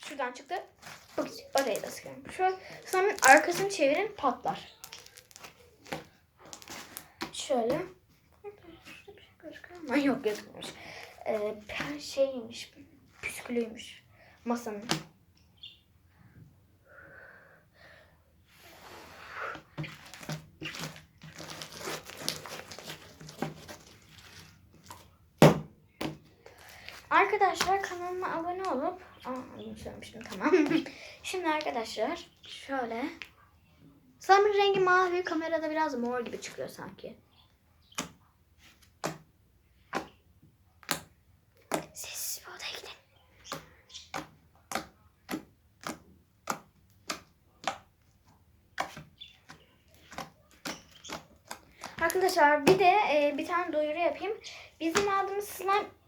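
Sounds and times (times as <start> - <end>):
slime squished by hand: 2.7 - 7.3, 19.8 - 25.6
slime squeezed popping: 4.5 - 7.1.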